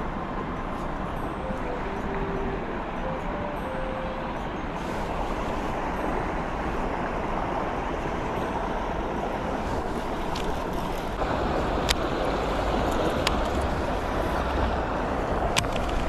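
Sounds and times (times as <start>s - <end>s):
strong wind on microphone: 4.4s - 16.0s.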